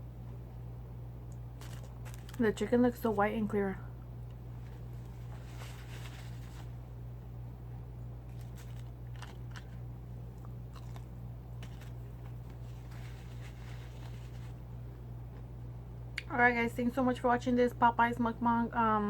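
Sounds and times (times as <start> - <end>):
low electrical hum: 0.0 - 19.0
crunching fried chicken: 1.4 - 2.7, 8.2 - 14.6
chewing: 8.3 - 14.2.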